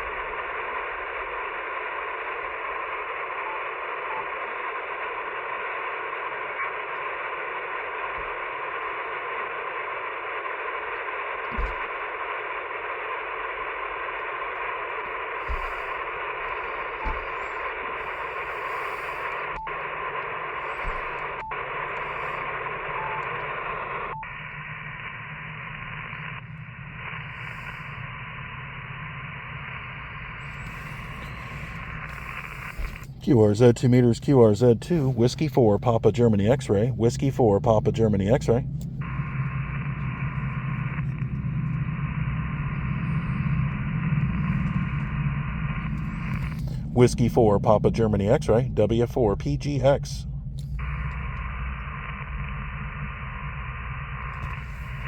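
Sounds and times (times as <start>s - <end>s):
radio static hiss: 0.0s - 55.0s
low thumps: 15.4s - 17.8s.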